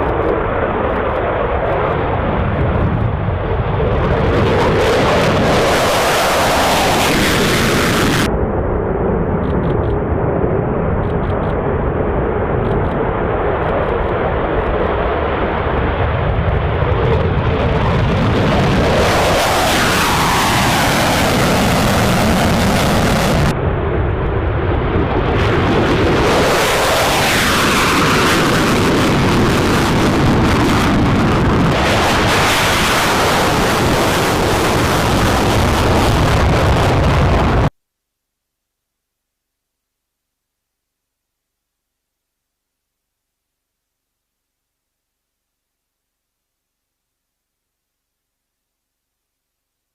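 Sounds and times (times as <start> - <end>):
jet engine roar: 0.0 - 37.7.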